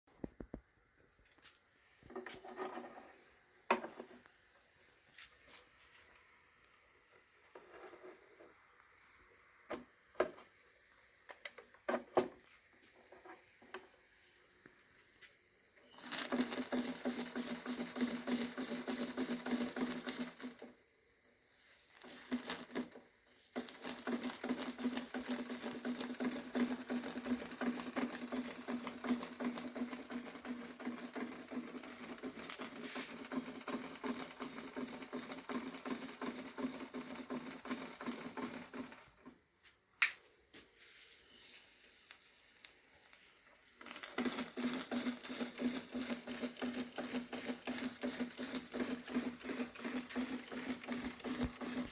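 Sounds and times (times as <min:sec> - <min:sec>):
toy steam engine ticking hum: 0:15.8 - 0:20.9, 0:21.9 - 0:39.2, 0:43.4 - 0:51.9.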